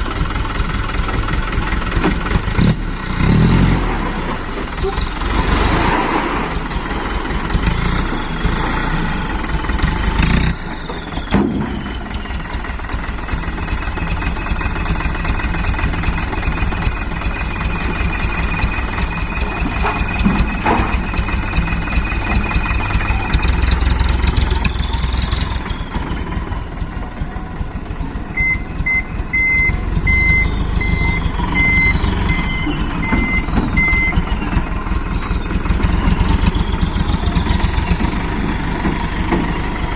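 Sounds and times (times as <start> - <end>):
dump truck engine running: 0.0 - 39.9
reversing beeper short beeps: 28.4 - 34.6.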